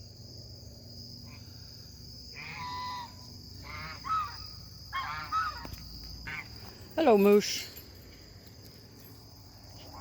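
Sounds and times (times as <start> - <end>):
crickets chirping: 0.0 - 10.0
bird calling: 2.4 - 6.5.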